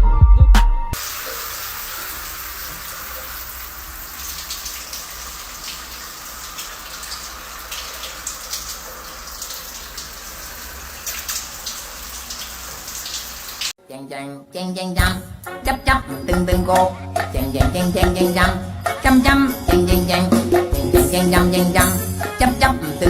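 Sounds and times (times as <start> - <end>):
water dripping: 1.0 - 13.8
water splashing: 1.0 - 13.8.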